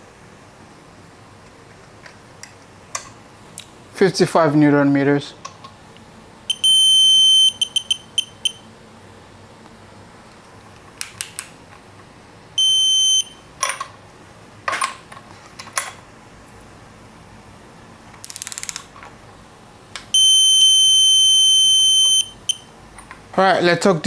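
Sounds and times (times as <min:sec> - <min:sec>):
torque wrench beeping high tone: 0:06.5 - 0:08.6, 0:12.6 - 0:13.4, 0:20.2 - 0:22.7
ratchet clicks: 0:18.2 - 0:18.9.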